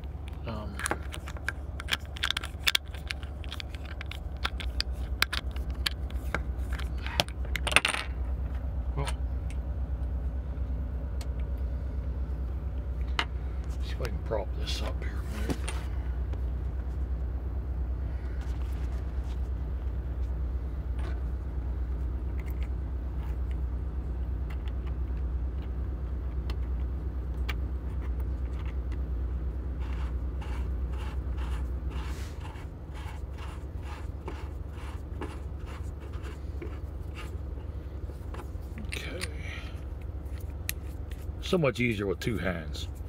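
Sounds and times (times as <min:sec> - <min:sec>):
engine idling: 0:00.0 - 0:43.0
small objects clicking and scraping: 0:00.2 - 0:08.1.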